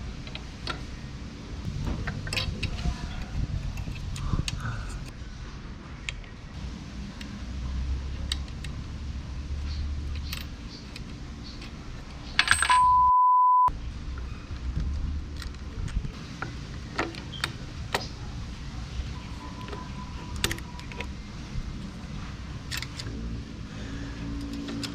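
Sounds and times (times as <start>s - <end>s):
low rumble: 1.6s - 5.6s
small parts clinking: 9.7s - 13.0s
censor bleep: 12.7s - 13.7s.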